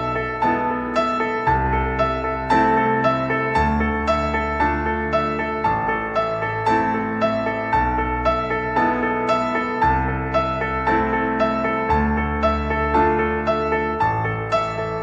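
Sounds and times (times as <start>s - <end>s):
gentle piano melody: 0.0s - 15.0s.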